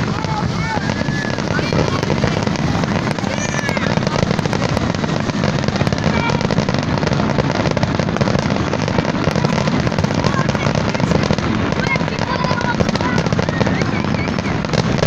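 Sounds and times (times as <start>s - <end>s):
fireworks bangs and crackles: 0.0s - 15.0s.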